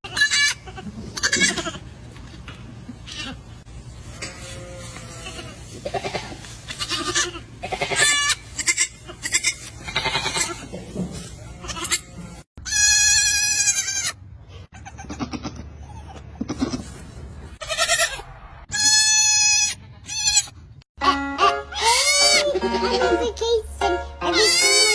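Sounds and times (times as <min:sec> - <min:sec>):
baby goats bleating: 0:00.0 - 0:01.9, 0:03.0 - 0:03.5, 0:04.1 - 0:16.8, 0:17.6 - 0:23.2, 0:24.2 - 0:24.9.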